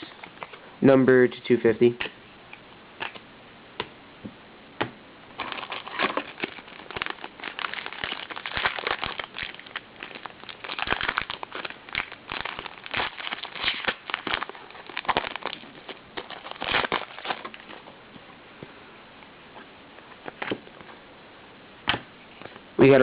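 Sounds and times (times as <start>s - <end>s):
card pack wrapper crinkling: 5.4s - 17.9s.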